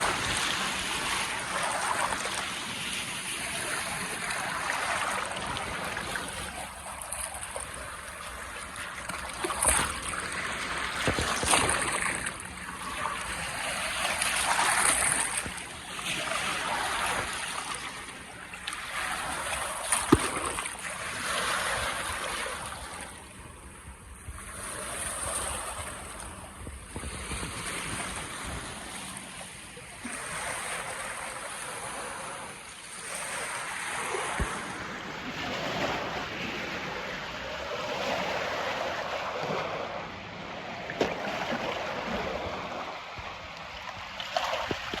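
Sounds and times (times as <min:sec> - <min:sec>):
lake waves washing ashore: 0:00.0 - 0:45.0
sharp water splashes: 0:09.0 - 0:17.9, 0:18.9 - 0:22.2.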